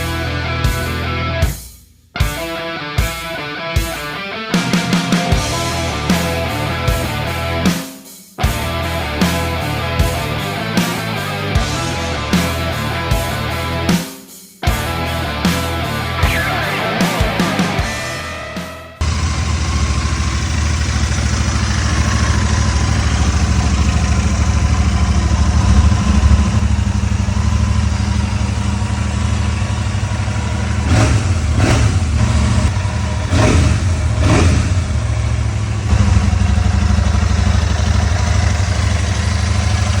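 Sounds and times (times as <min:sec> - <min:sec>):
motorcycle engine idling and revving: 0:04.6 - 0:07.8, 0:08.4 - 0:14.0, 0:17.2 - 0:40.0.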